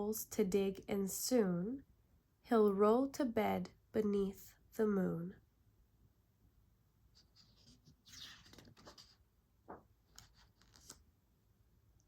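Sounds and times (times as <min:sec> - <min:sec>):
book page turning rustle: 0:07.2 - 0:11.1.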